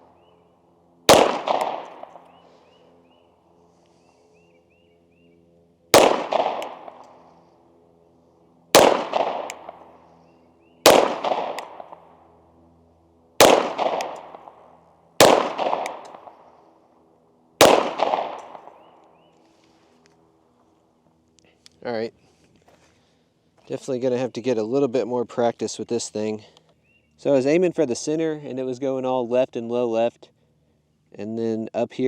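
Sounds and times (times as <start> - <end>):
pistol shots with echo: 1.1 - 2.3, 5.9 - 7.2, 8.7 - 9.9, 10.8 - 12.1, 13.4 - 16.5, 17.6 - 18.9.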